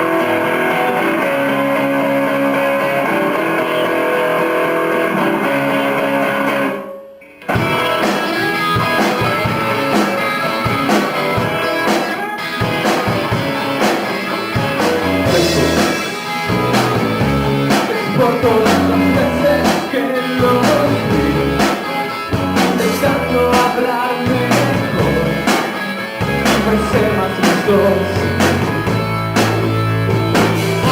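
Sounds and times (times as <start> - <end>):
electric guitar chords: 0.0 - 30.9
drum kit beat: 7.5 - 30.9.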